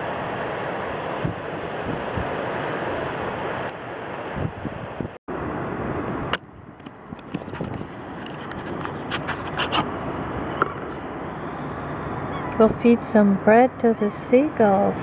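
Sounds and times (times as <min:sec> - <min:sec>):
wind noise on microphone: 0:00.0 - 0:15.0
clicks and scrapes of handling: 0:06.8 - 0:09.9.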